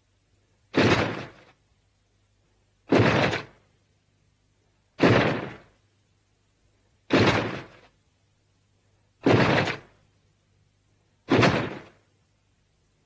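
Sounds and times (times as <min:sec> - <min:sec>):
noisy monster blast: 0:05.0 - 0:05.6, 0:09.2 - 0:09.9, 0:11.3 - 0:12.0.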